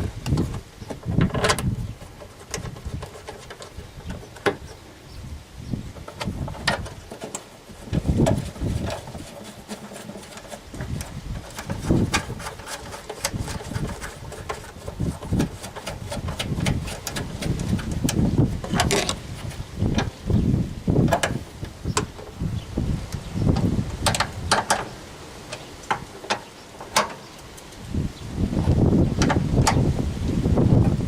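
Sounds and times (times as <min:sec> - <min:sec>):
plastic clicks and rattles: 0:06.0 - 0:20.1.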